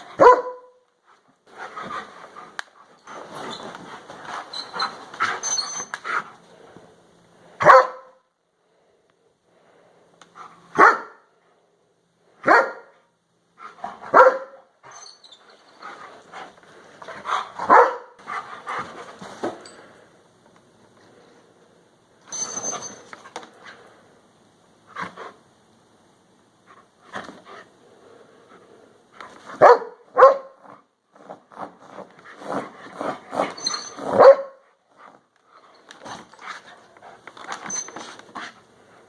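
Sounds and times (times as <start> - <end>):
dog barking: 0.2 - 0.8, 7.6 - 8.2, 10.8 - 11.3, 12.4 - 12.9, 14.1 - 14.6, 17.7 - 18.2, 29.6 - 30.6, 34.2 - 34.6.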